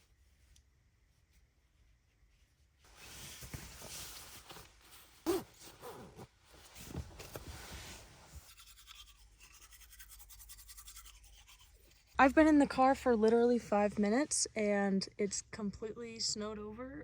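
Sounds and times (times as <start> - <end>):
fabric rustling and rubbing: 0.0 - 8.9.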